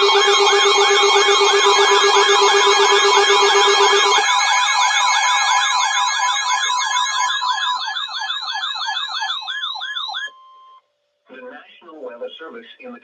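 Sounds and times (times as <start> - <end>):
steady high alert tone: 0.0 - 10.3
electronic siren sweeping: 0.0 - 10.4.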